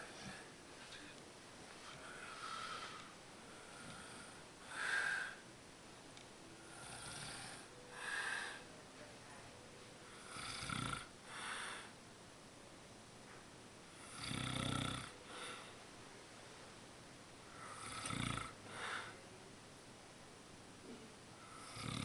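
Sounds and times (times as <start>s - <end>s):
man snoring: 2.3s - 5.4s, 6.7s - 8.6s, 10.2s - 11.9s, 14.0s - 15.6s, 17.6s - 19.1s, 21.4s - 22.0s.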